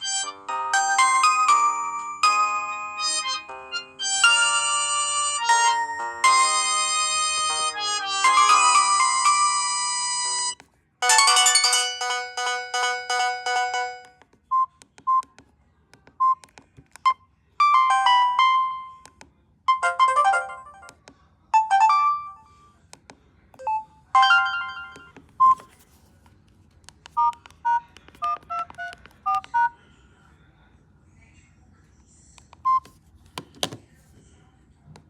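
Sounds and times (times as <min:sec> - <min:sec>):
phone ringtone melody: 0:00.0 - 0:14.6, 0:17.6 - 0:19.0, 0:19.7 - 0:21.0, 0:21.6 - 0:22.6, 0:23.6 - 0:25.7
phone key beeps: 0:14.5 - 0:15.3, 0:27.1 - 0:29.7, 0:32.6 - 0:33.0.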